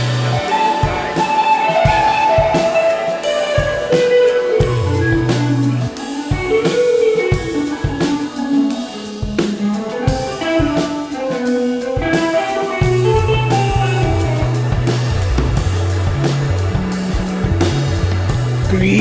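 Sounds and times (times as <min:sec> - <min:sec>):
bass line: 0:00.0 - 0:00.4, 0:04.6 - 0:05.9, 0:12.8 - 0:19.0
drum kit: 0:00.0 - 0:19.0
electric guitar melody: 0:00.0 - 0:19.0.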